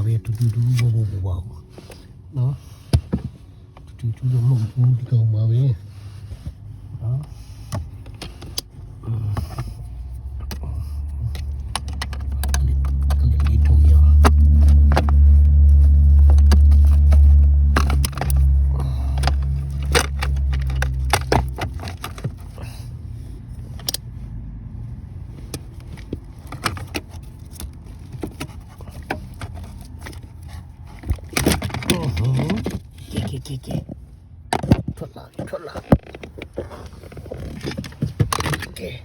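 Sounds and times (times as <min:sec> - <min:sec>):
vehicle engine humming: 0:00.0 - 0:39.0
hand tools clicking on plastic: 0:10.4 - 0:22.7, 0:25.6 - 0:33.3.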